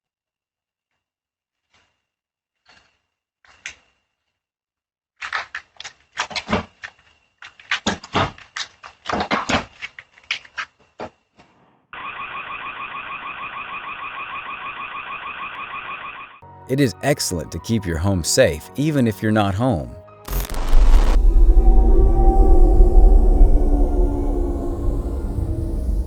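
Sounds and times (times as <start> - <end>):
electronic alarm siren pulsing: 20.3 - 26.0.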